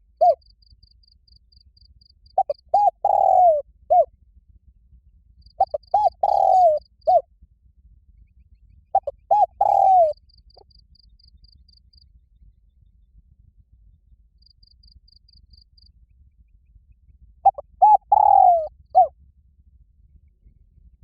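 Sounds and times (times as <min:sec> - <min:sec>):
dove cooing: 0:00.0 - 0:00.4, 0:02.4 - 0:04.1, 0:05.6 - 0:07.2, 0:09.0 - 0:10.2, 0:17.4 - 0:19.1.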